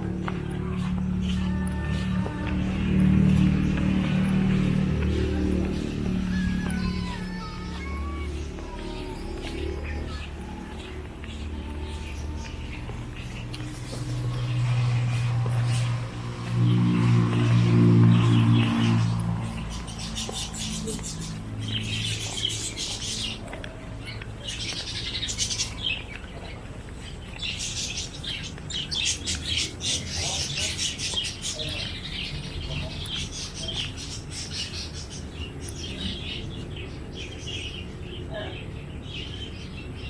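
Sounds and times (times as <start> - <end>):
small birds chirping: 0.0 - 40.0.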